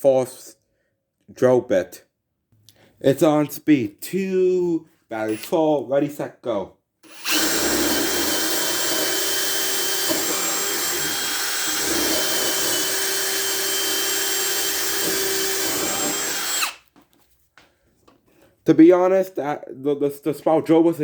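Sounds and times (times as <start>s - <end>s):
hammer drill motor whining: 5.3s - 5.5s, 7.0s - 16.8s.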